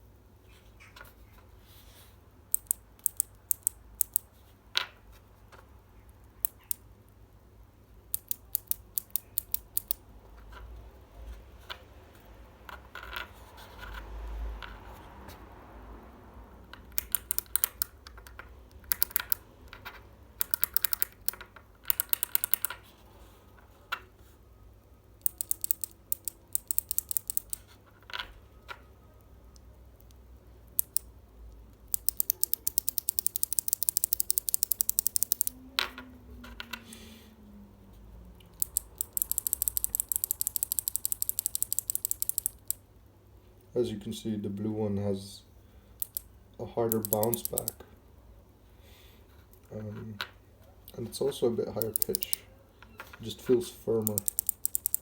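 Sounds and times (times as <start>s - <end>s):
soft rustle of handling: 0.4s - 2.3s, 22.8s - 24.6s
mechanical key switches clicking: 16.9s - 18.0s, 18.7s - 19.4s, 20.4s - 22.7s, 25.2s - 27.6s, 31.8s - 35.5s, 46.0s - 46.3s, 46.9s - 47.8s, 51.8s - 52.4s, 54.0s - 55.0s.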